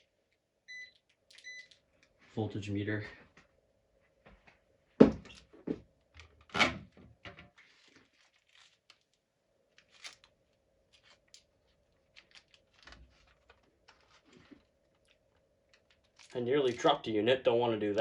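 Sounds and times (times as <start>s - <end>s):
small clicks and rustles: 0.1s - 2.2s, 7.2s - 17.0s.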